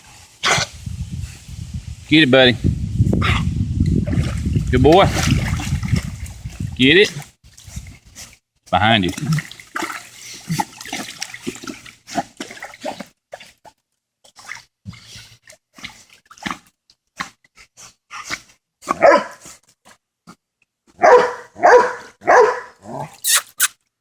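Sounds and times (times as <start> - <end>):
dog barking: 18.9 - 19.4, 21.0 - 22.8
dog yelping: 21.0 - 23.7.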